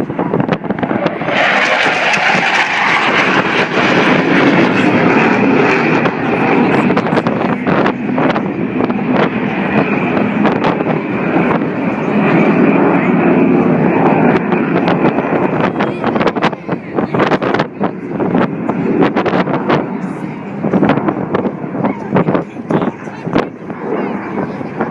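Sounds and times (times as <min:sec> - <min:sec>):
aeroplane engine noise: 0:00.0 - 0:24.9
wind buffeting microphone: 0:00.0 - 0:24.9.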